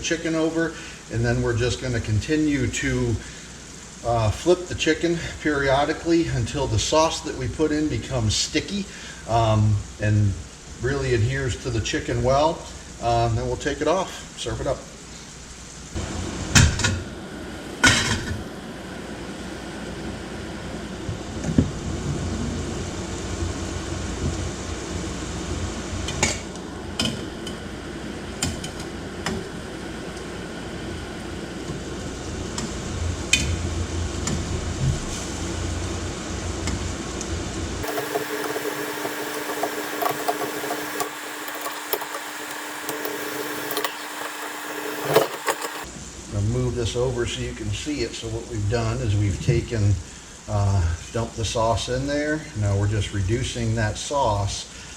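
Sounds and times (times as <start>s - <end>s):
steady low hum: 37.8s - 45.8s.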